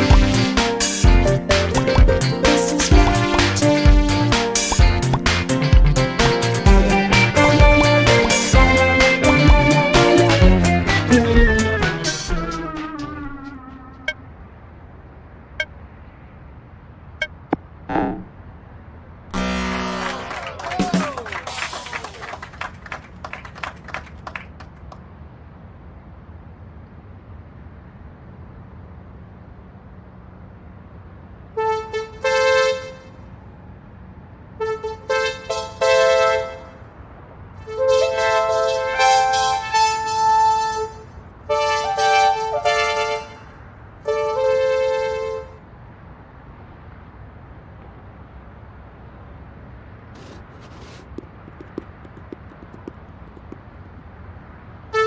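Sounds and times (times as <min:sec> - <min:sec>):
steady low hum: 0:00.0 - 0:14.7
short bright horn honks: 0:19.4 - 0:21.2
light sharp knocks: 0:51.0 - 0:54.1.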